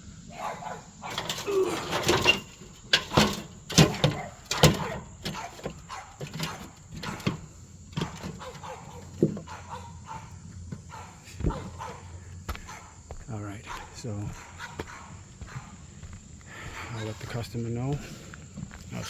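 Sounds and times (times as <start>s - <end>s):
dog barking: 0.3s - 1.3s, 3.9s - 7.3s, 8.0s - 15.8s, 16.6s - 17.4s.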